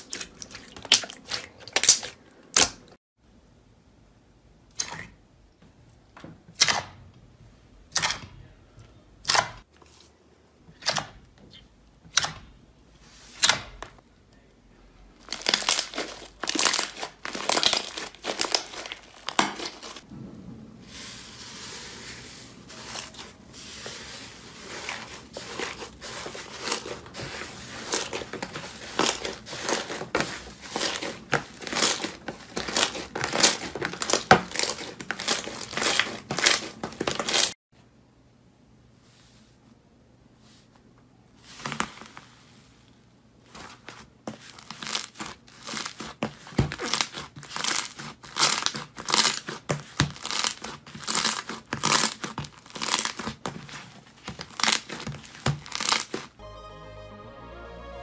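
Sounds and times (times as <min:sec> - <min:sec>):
slime crackling and tearing: 0:15.2 - 0:20.1, 0:24.6 - 0:37.6, 0:44.5 - 0:56.4.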